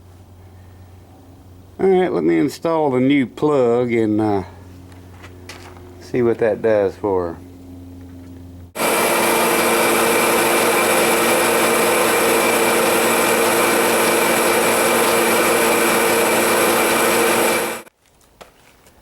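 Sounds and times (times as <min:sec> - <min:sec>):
heater blower fan rushing air: 0:00.0 - 0:17.9
motor hum: 0:07.4 - 0:17.9.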